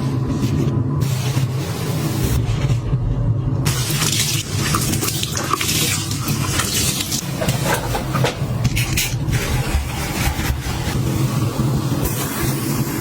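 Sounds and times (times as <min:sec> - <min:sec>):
household items clicking and scraping: 0:03.7 - 0:11.0.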